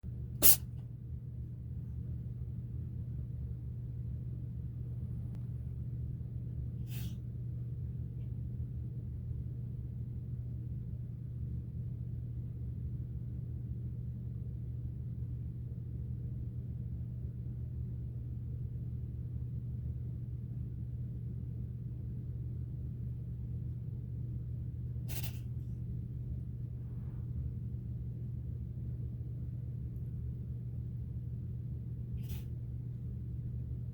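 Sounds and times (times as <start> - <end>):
steady low hum: 0.0 - 33.9
cat sneezing: 0.4 - 0.8, 6.8 - 7.3, 25.0 - 25.6, 32.2 - 32.7.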